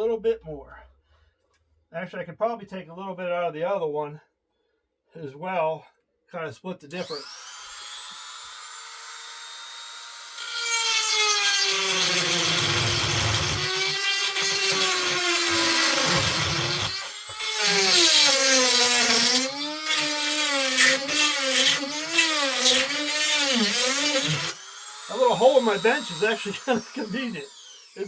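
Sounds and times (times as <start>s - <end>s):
rotary tool grinding metal: 7.0s - 28.0s.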